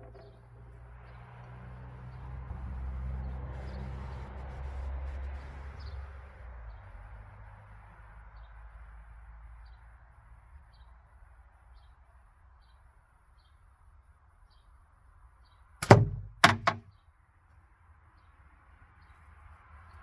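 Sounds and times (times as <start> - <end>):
metal target rattling: 15.8 - 16.8
slingshot ball hitting target: 15.8 - 16.8.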